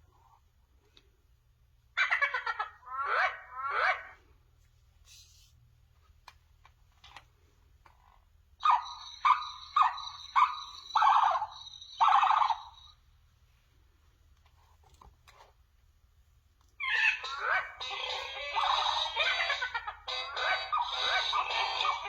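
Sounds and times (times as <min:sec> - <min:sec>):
electronic animal call: 0:08.6 - 0:13.0, 0:16.8 - 0:22.0.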